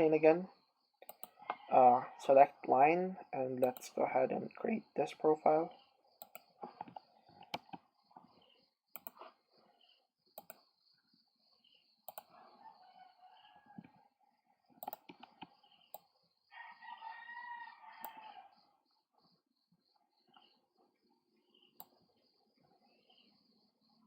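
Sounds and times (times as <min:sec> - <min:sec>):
computer mouse clicks: 0:01.0 - 0:01.7, 0:03.6 - 0:03.9, 0:06.2 - 0:07.8, 0:08.9 - 0:09.4, 0:10.4 - 0:10.7, 0:12.1 - 0:12.4, 0:14.8 - 0:16.1, 0:21.6 - 0:22.0
rooster crowing: 0:12.3 - 0:14.0, 0:16.5 - 0:18.7.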